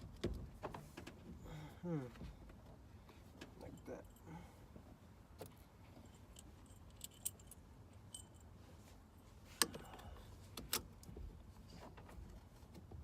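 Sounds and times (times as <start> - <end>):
small metal parts clinking: 6.1 - 8.5.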